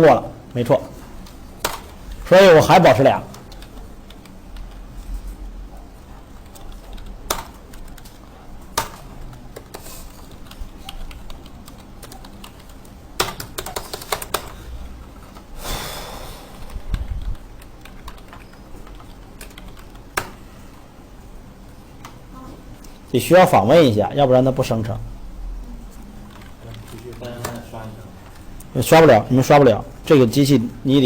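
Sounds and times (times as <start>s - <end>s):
computer keyboard typing: 1.6s - 2.3s, 3.0s - 4.8s, 5.9s - 15.4s, 16.6s - 20.4s, 26.2s - 28.8s
breathy rush of noise: 15.6s - 17.2s.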